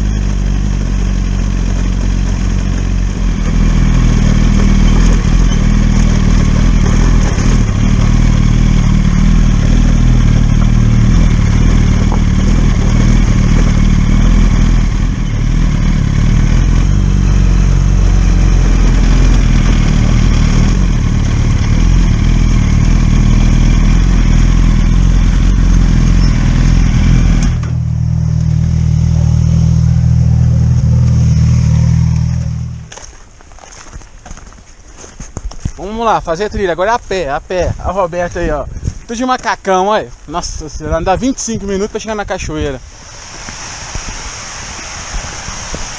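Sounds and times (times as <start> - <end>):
motorcycle engine running: 0.0 - 39.6
rushing wind noise: 3.0 - 22.2, 35.4 - 39.3, 40.3 - 45.9.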